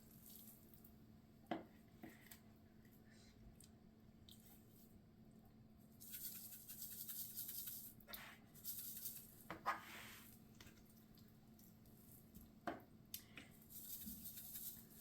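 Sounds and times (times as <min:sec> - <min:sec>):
spice shaker rattling: 0:06.0 - 0:08.0, 0:08.6 - 0:09.4, 0:13.7 - 0:15.0.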